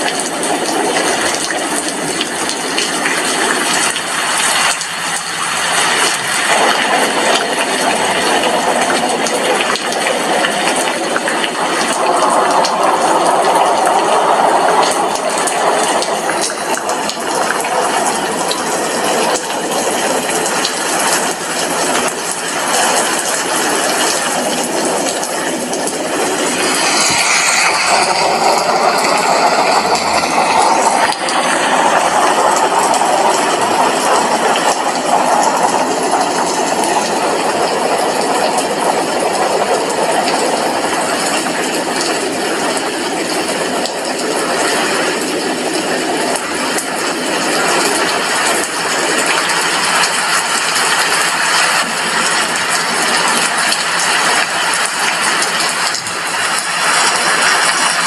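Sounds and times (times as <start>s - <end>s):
heavy rain on a window: 0.0s - 58.0s.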